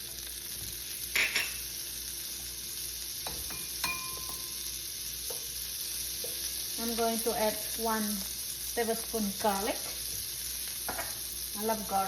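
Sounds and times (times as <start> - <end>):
butter sizzling in frying pan: 0.0 - 12.0
sharp clink: 3.2 - 4.6.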